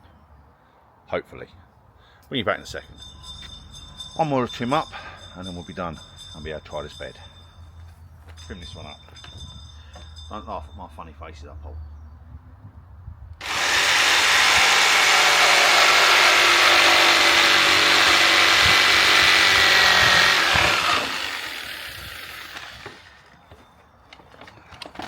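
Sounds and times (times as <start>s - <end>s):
power saw cutting wood: 13.4s - 23.3s.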